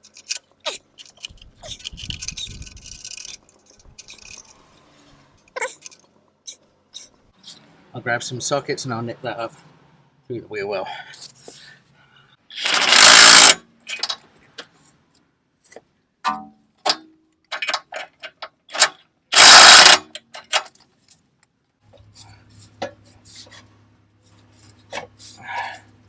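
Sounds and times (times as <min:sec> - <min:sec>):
metal tools clinking: 0:00.0 - 0:04.6
loud tool rattles: 0:01.0 - 0:04.6, 0:12.6 - 0:14.1, 0:18.7 - 0:20.1.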